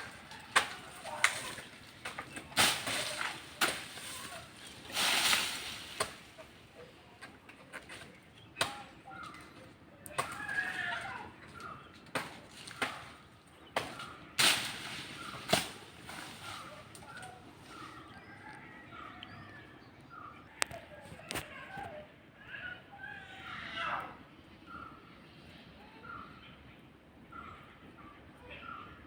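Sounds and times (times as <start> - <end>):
blade chopping palm trunk: 0.0 - 6.5, 8.6 - 9.4, 12.1 - 16.8.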